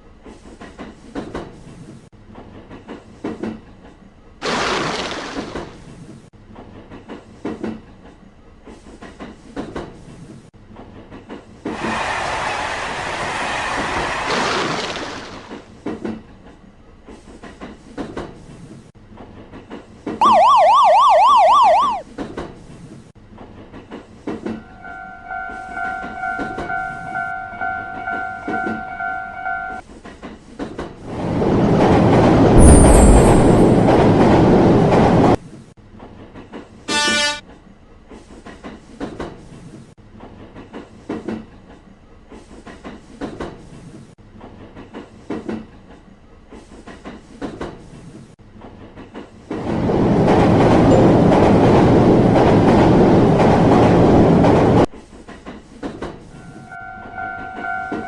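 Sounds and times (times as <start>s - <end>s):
wheels clicking over rail joints: 5.6s - 12.0s, 33.6s - 58.0s
rush of train passing: 10.5s - 15.9s, 29.8s - 36.8s, 42.4s - 58.0s
fast warbling siren tone: 20.2s - 22.0s.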